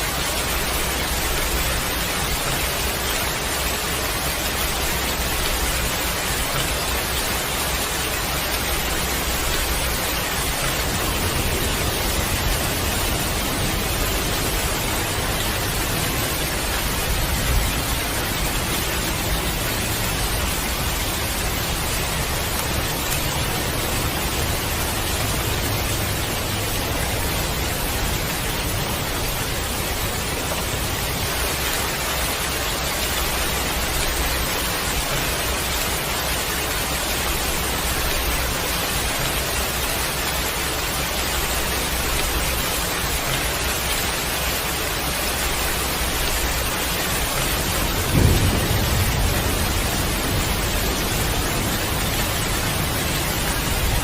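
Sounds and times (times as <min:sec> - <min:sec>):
heavy rain pouring: 0:00.0 - 0:54.0
thunder boom: 0:47.8 - 0:54.0.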